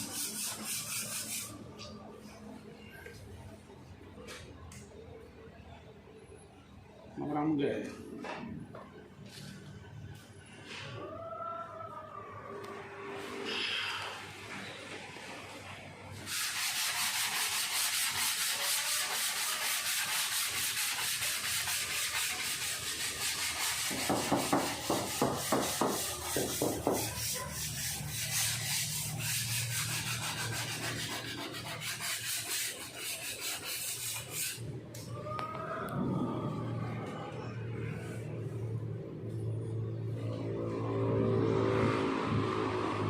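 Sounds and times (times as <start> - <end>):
hand sanding with sandpaper: 0.0 - 1.6, 16.2 - 34.6.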